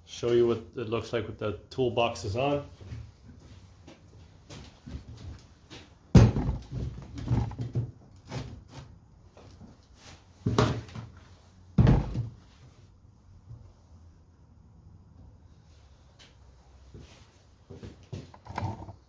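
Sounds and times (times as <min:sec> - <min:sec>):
plastic toolboxes knocking and thumping: 0:06.1 - 0:08.7, 0:10.5 - 0:11.2, 0:11.8 - 0:12.4, 0:18.3 - 0:19.0.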